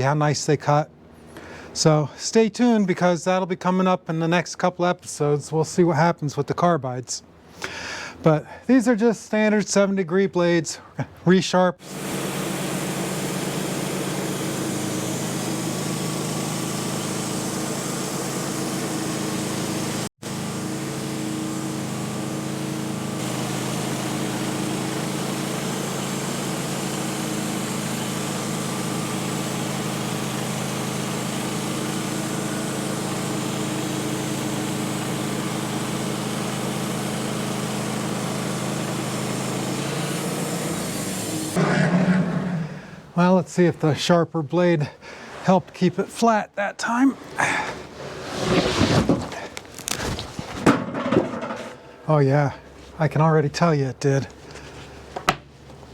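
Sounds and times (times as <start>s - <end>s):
bandsaw mill engine running: 11.8s - 43.4s
band blade sawing log: 38.9s - 43.2s, 47.4s - 50.7s.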